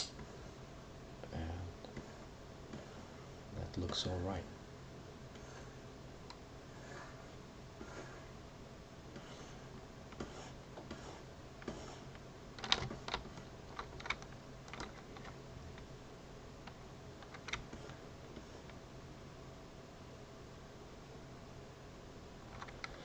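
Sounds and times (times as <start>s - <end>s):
faint steady hum: 0.0s - 23.0s
computer keyboard clicking: 12.6s - 15.3s, 17.2s - 17.7s.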